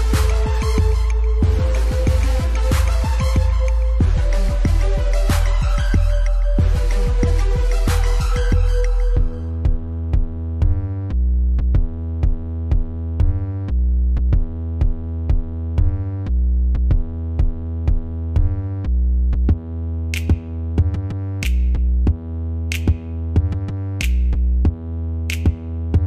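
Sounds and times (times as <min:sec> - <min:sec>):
synthesizer chords: 0:00.0 - 0:10.9
drum machine beat: 0:00.0 - 0:11.0, 0:11.6 - 0:16.2, 0:16.8 - 0:18.8, 0:19.4 - 0:26.0
deep bass: 0:00.0 - 0:26.0.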